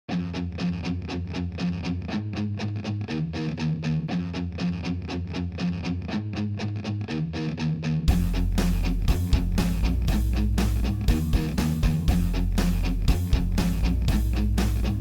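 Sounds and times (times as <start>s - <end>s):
electric guitar riff: 0.1s - 15.0s
heavy low end music: 8.1s - 15.0s.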